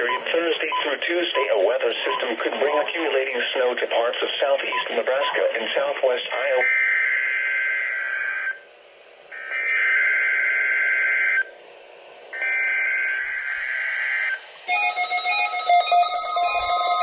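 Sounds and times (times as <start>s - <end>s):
radio hiss: 0.0s - 6.7s
electronic synthesizer music: 13.2s - 17.0s.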